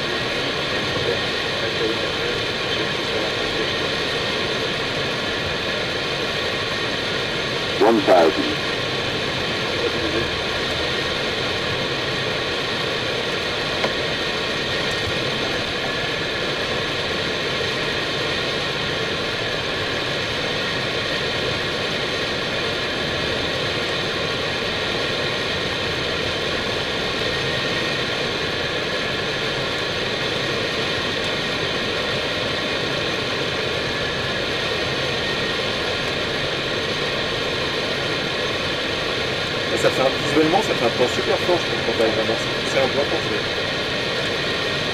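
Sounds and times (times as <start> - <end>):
cockpit noise steady rush: 0.0 - 18.1, 33.8 - 44.9.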